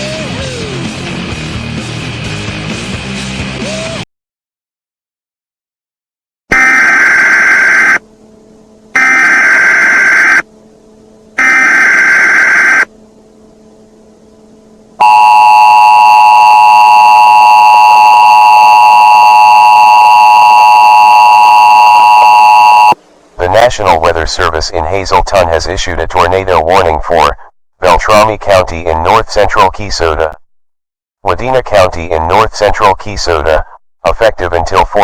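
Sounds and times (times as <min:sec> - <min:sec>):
harsh data bursts: 0:06.5 - 0:08.0, 0:09.0 - 0:10.4, 0:11.4 - 0:12.9
two-tone attention signal: 0:06.5 - 0:08.0, 0:09.0 - 0:10.4, 0:11.4 - 0:12.9, 0:15.0 - 0:23.0.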